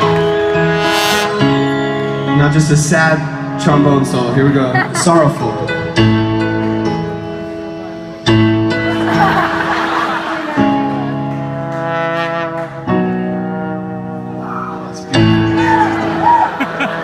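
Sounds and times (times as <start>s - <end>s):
crowd noise: 0.0s - 5.8s, 6.8s - 11.8s, 14.2s - 17.0s
trombone slow solo: 0.7s - 1.4s, 11.5s - 14.5s.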